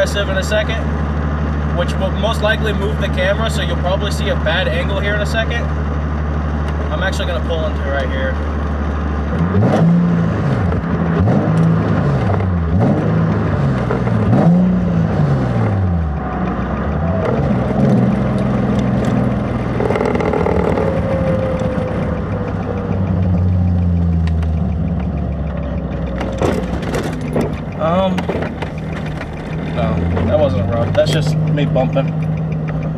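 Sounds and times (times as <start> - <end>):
car engine revving: 0.0 - 32.9
engine whine: 0.0 - 32.9.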